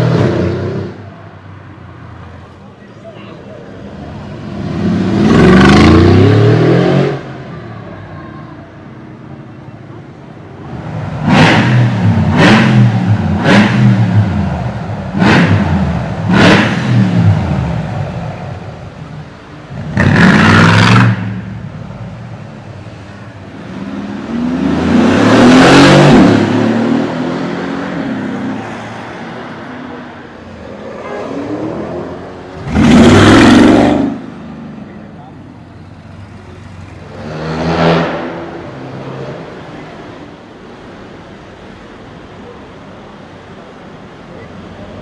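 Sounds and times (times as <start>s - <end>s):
car engine revving: 4.3s - 7.3s, 10.6s - 18.3s, 19.7s - 21.7s, 23.4s - 29.8s, 30.6s - 35.0s, 36.2s - 39.7s.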